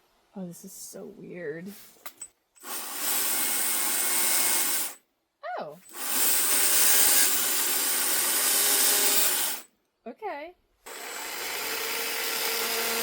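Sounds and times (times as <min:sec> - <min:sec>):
electric chainsaw cutting pumpkin: 0:05.9 - 0:09.7, 0:10.9 - 0:13.0.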